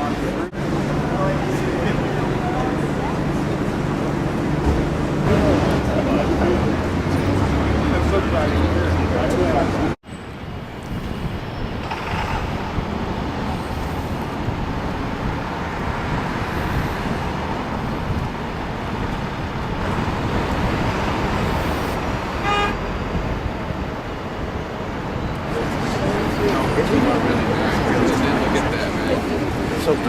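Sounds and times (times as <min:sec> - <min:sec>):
city street traffic rumble: 0:00.0 - 0:30.0
car horn toot: 0:22.4 - 0:22.8.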